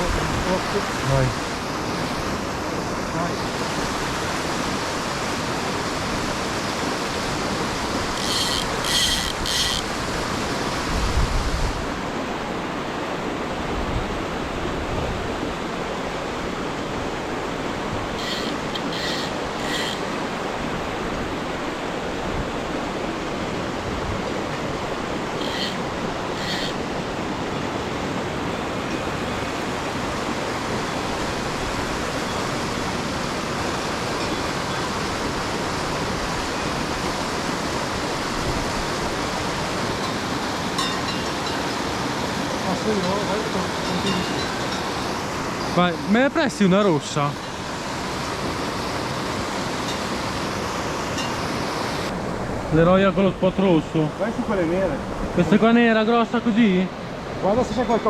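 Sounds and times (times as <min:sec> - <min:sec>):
mountain torrent rushing: 0:00.0 - 0:58.0
high-pitched bird chirps: 0:18.2 - 0:20.2, 0:25.4 - 0:25.8, 0:26.4 - 0:26.8.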